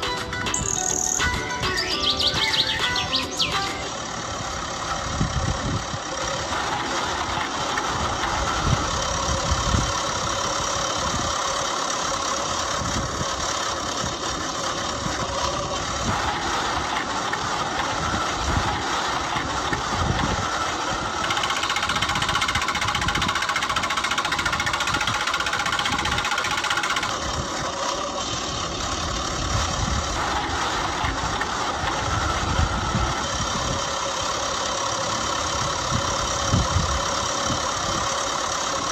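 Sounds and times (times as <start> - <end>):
engine running: 0.0 - 38.9.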